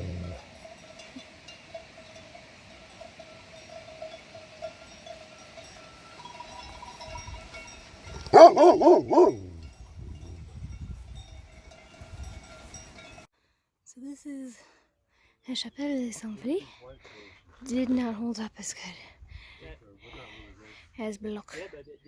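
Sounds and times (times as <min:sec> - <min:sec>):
dog barking: 0:08.2 - 0:09.6.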